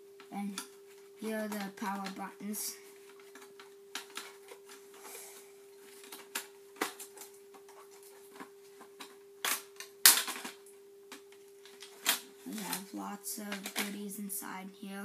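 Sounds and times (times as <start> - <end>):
faint steady hum: 0.0 - 15.0
plastic parts clicking and knocking: 3.1 - 4.8, 5.9 - 12.8, 13.5 - 14.0.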